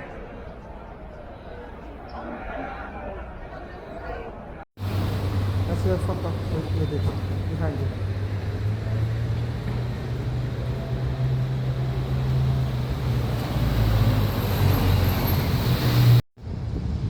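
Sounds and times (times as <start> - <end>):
vehicle engine droning: 4.8 - 16.2
traffic noise: 4.8 - 17.0.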